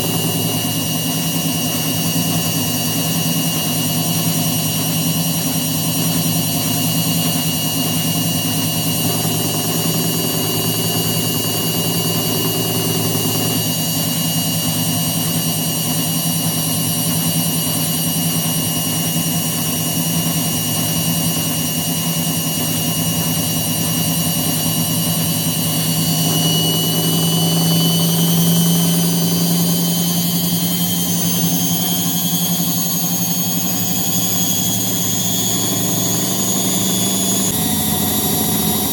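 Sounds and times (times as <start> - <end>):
washing machine spinning: 0.0 - 38.9.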